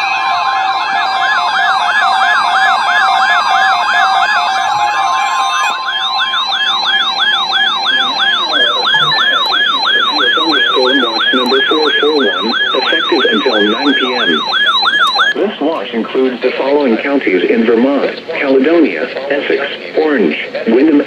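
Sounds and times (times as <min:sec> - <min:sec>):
alert siren warbling: 0:00.0 - 0:17.8
steady alert tone: 0:03.9 - 0:15.5.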